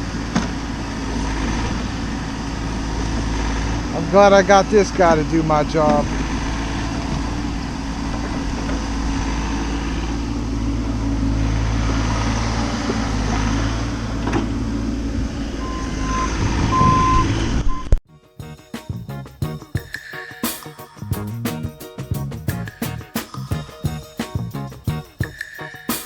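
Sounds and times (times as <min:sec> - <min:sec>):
backup alarm beeps: 0:15.6 - 0:18.0.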